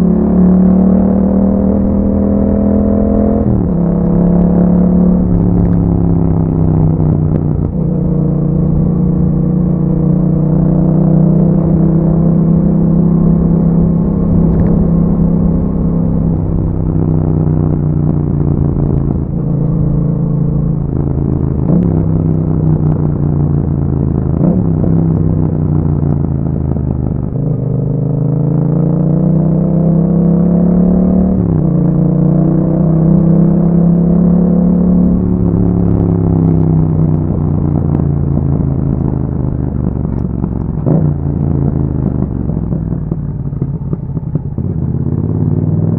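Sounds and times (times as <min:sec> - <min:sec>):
motorcycle engine running: 0:00.0 - 0:45.9.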